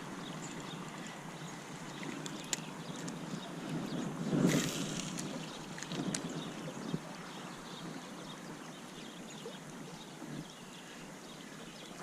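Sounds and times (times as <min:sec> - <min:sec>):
flowing stream: 0:00.0 - 0:12.0
wind on microphone: 0:00.0 - 0:12.0
faint clicks: 0:01.8 - 0:03.4.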